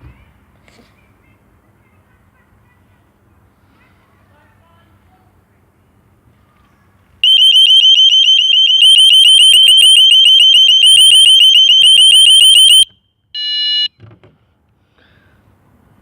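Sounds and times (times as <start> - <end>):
pulsing alarm siren: 7.2 - 13.9
short beep: 8.8 - 14.0.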